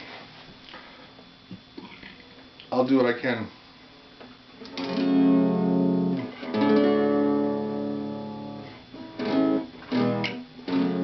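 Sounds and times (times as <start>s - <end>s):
acoustic guitar chords strummed: 4.7s - 11.0s.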